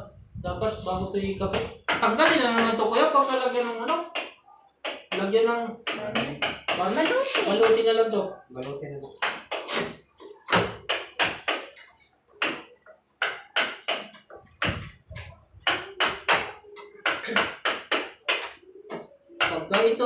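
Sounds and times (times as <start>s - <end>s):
sharp knocks on wooden door: 1.5s - 3.0s, 5.9s - 7.8s, 9.2s - 11.7s.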